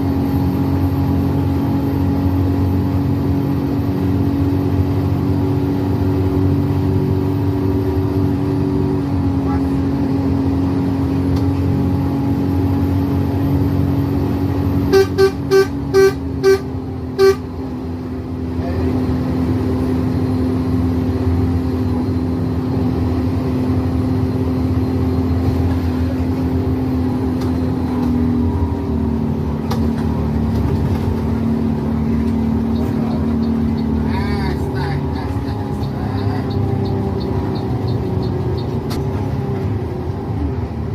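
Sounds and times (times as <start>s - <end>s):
bus engine drone and road noise: 0.0s - 40.9s
bus horn short blasts: 14.9s - 17.6s.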